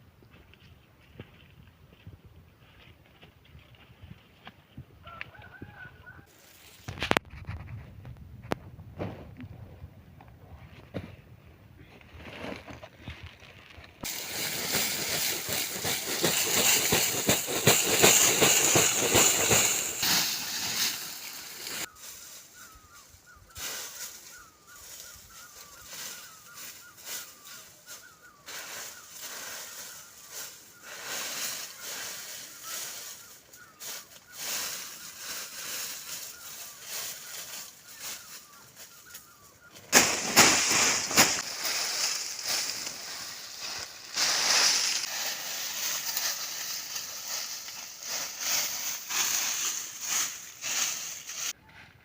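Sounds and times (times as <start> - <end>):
bird chirping: 14.4 - 49.8.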